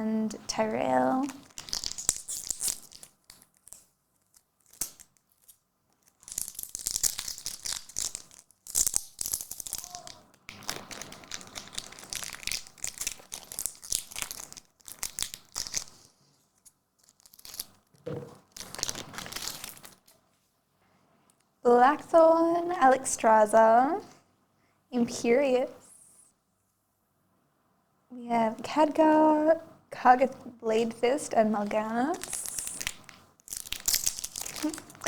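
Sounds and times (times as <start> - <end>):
wrapper tearing and crinkling: 1.2 - 20.2, 32.1 - 35.0.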